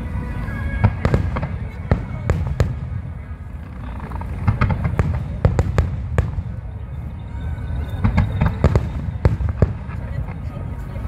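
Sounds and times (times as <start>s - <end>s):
steady low rumble: 0.0s - 11.0s
fireworks bangs and crackles: 0.8s - 11.0s.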